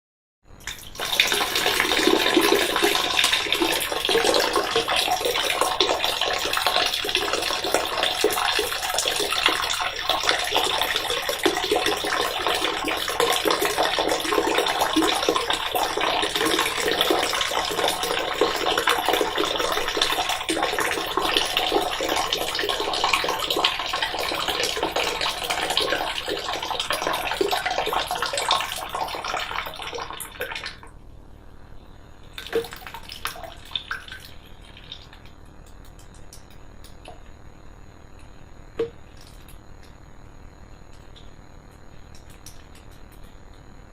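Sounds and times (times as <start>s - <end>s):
person urinating into water: 0.6s - 30.9s, 32.4s - 35.3s.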